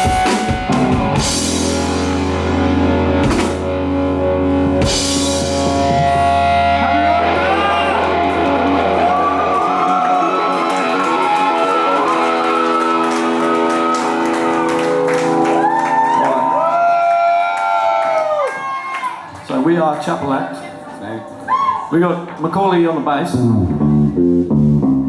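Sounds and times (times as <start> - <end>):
electric guitar bending held notes: 0.0 - 16.5, 23.3 - 25.0
low bass note ringing: 1.5 - 8.9.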